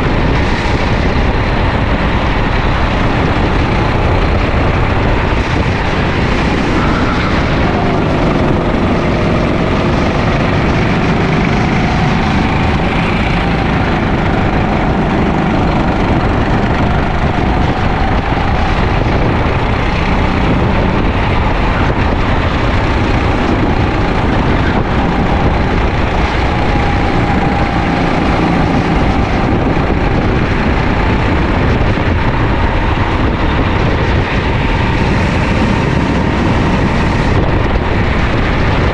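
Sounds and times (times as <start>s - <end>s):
kart engine racing: 0.0s - 38.9s
loud rushing noise: 0.0s - 38.9s.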